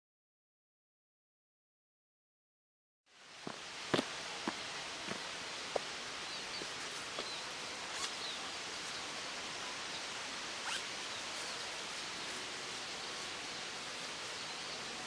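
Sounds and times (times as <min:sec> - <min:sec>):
outdoor background hiss: 0:03.1 - 0:15.0.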